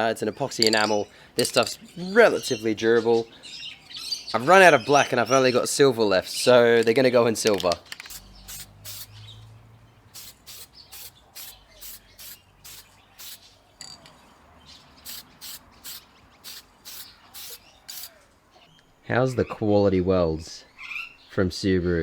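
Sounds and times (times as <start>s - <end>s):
aerosol paint spraying: 7.9s - 9.3s, 10.1s - 13.5s, 15.0s - 18.2s.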